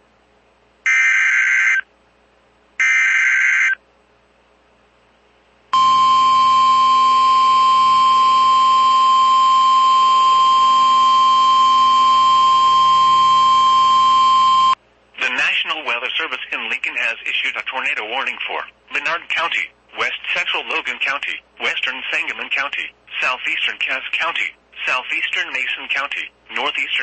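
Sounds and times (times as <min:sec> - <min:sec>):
steady warning alarm tone: 0:05.8 - 0:14.8.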